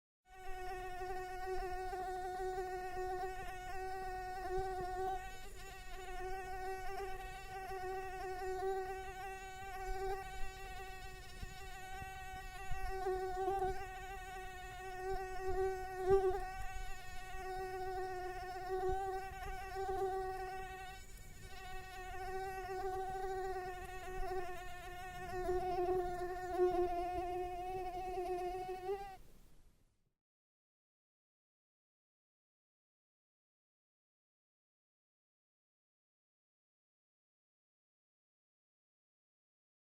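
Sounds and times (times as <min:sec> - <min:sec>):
mosquito buzzing: 0:00.3 - 0:29.2.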